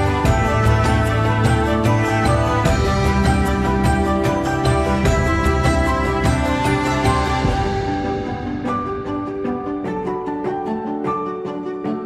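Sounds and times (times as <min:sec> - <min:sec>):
plucked string melody: 0:00.0 - 0:12.0.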